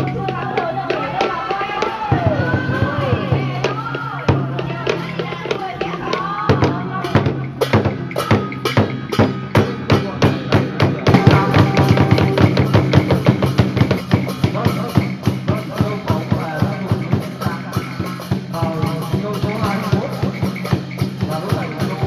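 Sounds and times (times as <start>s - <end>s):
other percussion: 0.0s - 22.0s
rapid drumming: 0.0s - 22.0s
low held tones: 11.0s - 14.0s.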